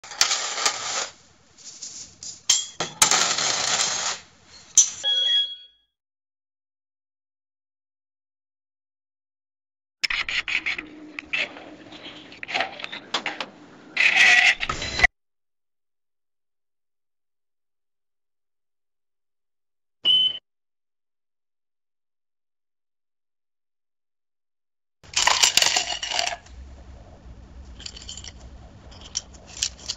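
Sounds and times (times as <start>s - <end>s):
paper money rustling: 0.0s - 4.2s, 27.7s - 29.9s
coins clinking: 0.0s - 5.0s, 25.0s - 26.5s, 27.6s - 29.9s.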